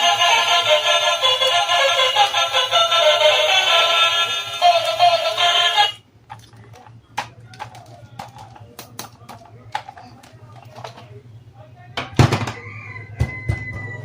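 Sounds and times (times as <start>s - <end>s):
music with synthetic singing voice: 0.0s - 6.0s.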